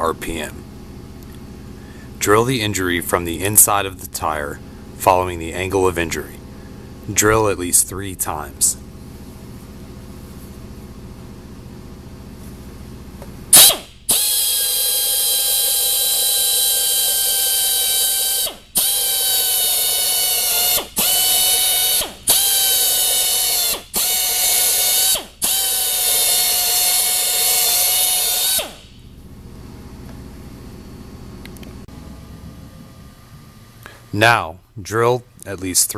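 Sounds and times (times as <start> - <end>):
drill reaming tire rubber: 13.5 - 28.9.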